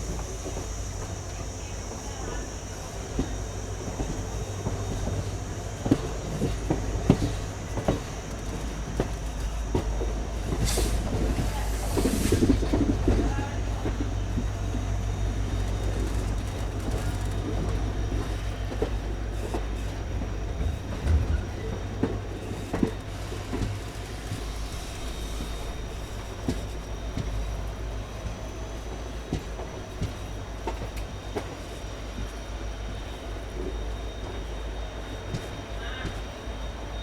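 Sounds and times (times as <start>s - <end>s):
wheels clicking over rails: 0.0s - 36.7s
train coach rumbling: 0.0s - 37.0s.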